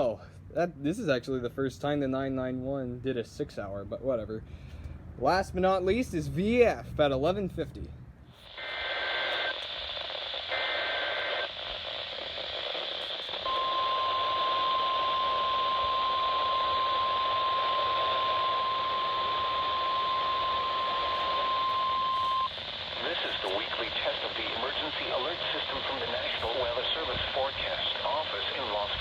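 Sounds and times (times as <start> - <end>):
steady warning alarm tone: 8.4 - 23.7
radio static: 8.4 - 29.0.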